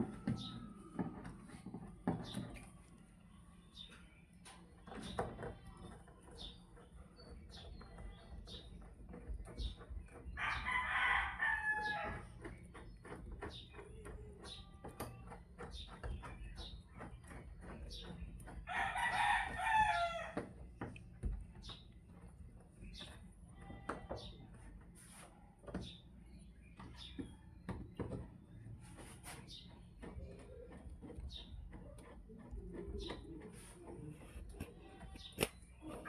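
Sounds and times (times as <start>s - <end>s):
rooster crowing: 10.4s - 12.2s.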